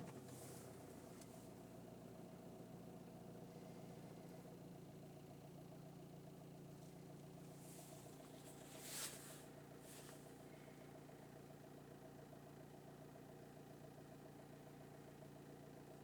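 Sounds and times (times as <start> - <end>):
diesel engine idling: 0.0 - 16.0
brief hisses: 8.7 - 10.2.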